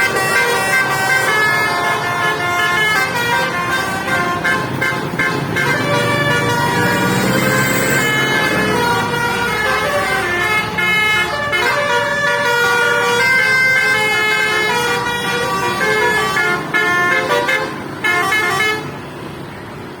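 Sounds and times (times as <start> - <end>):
musical bus horn playing a tune: 0.0 - 19.0.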